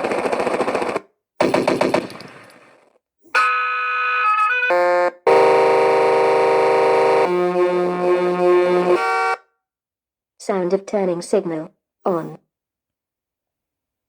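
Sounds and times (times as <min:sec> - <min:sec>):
electronic truck horn tones: 0:03.3 - 0:09.4.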